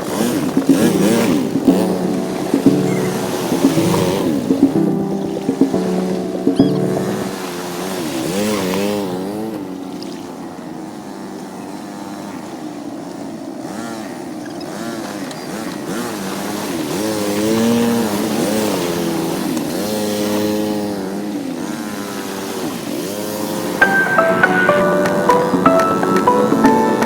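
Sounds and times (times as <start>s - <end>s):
atv engine revving: 0.0s - 5.0s.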